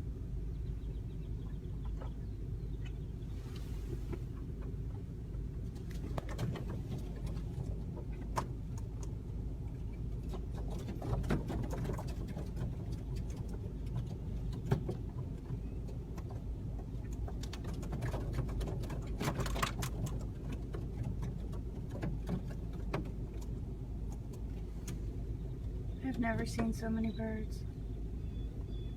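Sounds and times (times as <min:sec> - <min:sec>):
low car hum: 0:00.0 - 0:28.9.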